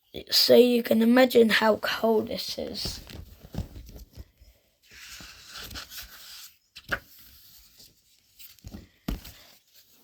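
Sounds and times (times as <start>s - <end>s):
paper rustling: 2.8s - 10.0s
page turning: 4.9s - 10.0s.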